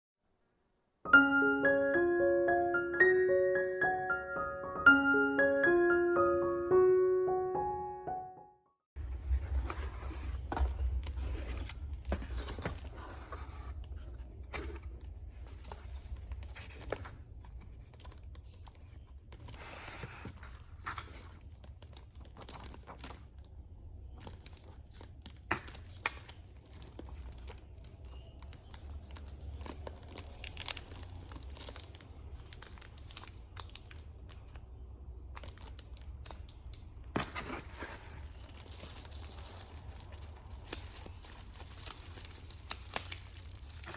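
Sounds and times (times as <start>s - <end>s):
packaging crinkling and tearing: 9.5s - 34.6s, 35.3s - 43.9s.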